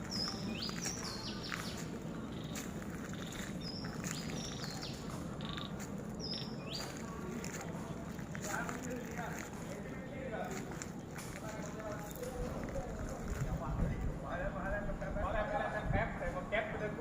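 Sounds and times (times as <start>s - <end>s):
bird singing high phrase: 0.1s - 7.1s.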